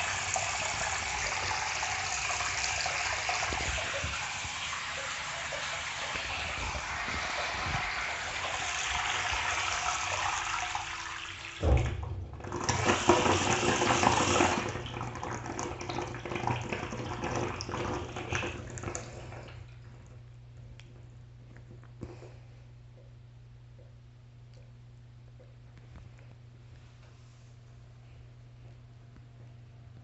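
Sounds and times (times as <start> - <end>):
water pouring into a bathtub: 0.0 - 19.9
steady low hum: 11.6 - 15.9, 17.1 - 30.0.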